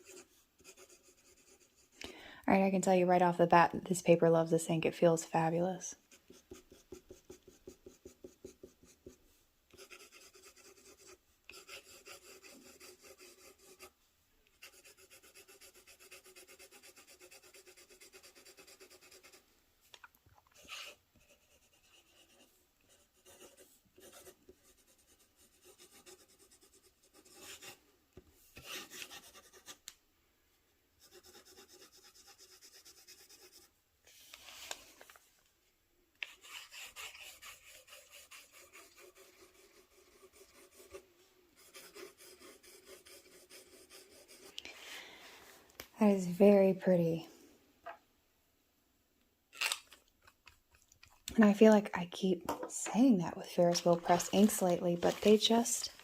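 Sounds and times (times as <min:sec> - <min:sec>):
fountain pen scratching on paper: 0:00.0 - 0:01.9, 0:09.8 - 0:13.9, 0:14.6 - 0:19.4, 0:20.6 - 0:27.8, 0:31.0 - 0:33.7, 0:36.2 - 0:41.0, 0:41.6 - 0:44.5.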